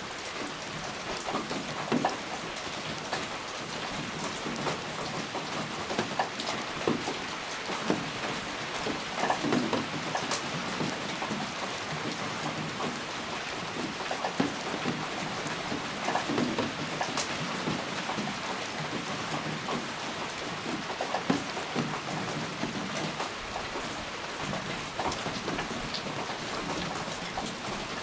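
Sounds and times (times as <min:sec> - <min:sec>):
raindrops tapping close by: 0:00.0 - 0:28.0
steady rain falling: 0:00.0 - 0:28.0.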